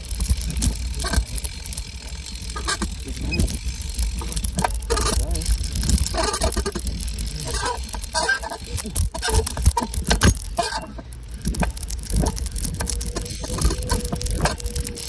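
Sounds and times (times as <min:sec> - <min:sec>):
bicycle parts rattling: 0:00.0 - 0:15.0
low rumble: 0:10.4 - 0:15.0.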